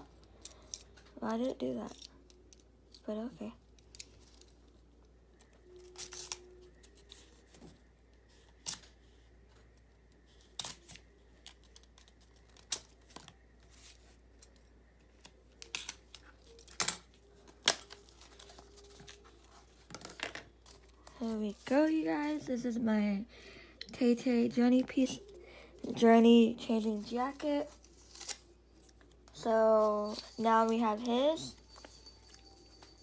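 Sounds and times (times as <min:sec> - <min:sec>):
packaging clicks and rustles: 0:10.2 - 0:21.6.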